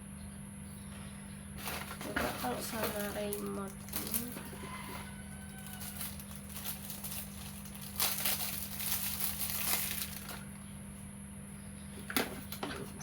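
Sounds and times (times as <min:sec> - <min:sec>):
plastic packaging crinkling: 0:01.6 - 0:10.5.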